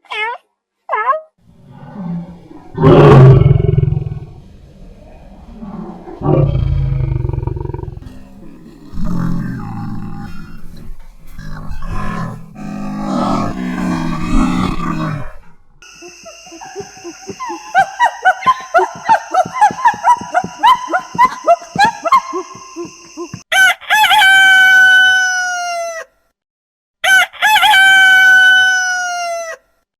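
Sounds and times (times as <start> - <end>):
chickens clucking: 16.4 - 23.4.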